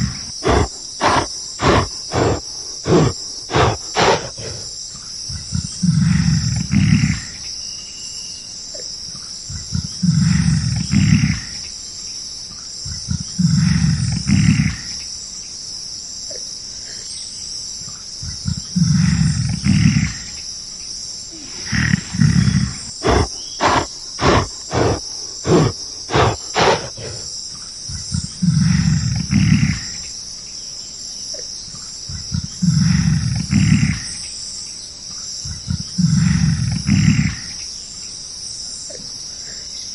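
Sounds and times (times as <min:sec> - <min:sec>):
deep animal calls: 0:00.0 - 0:07.4, 0:21.3 - 0:30.0
animal grunts: 0:00.0 - 0:07.5, 0:09.5 - 0:11.8, 0:12.9 - 0:15.1, 0:18.2 - 0:20.4, 0:21.3 - 0:30.1, 0:32.1 - 0:34.2, 0:35.5 - 0:37.7
high-pitched insect chorus: 0:00.0 - 0:39.9.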